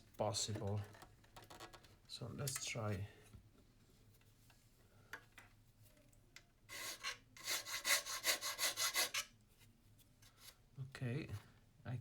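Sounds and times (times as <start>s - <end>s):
hand file rasping: 6.8s - 9.2s.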